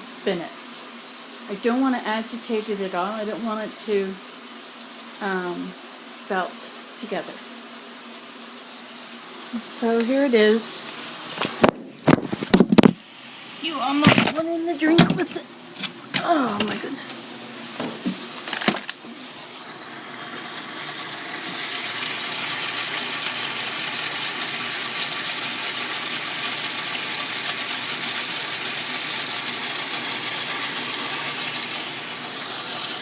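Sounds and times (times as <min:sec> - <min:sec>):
water pouring into washing machine: 0:19.2 - 0:33.0.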